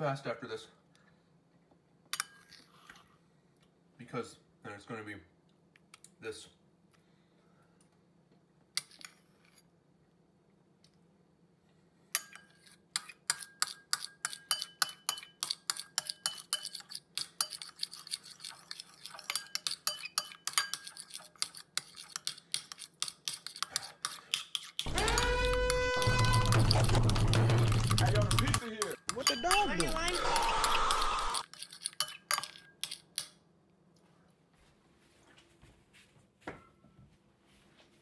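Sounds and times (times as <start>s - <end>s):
spoon scraping a dish: 12.2s - 33.3s.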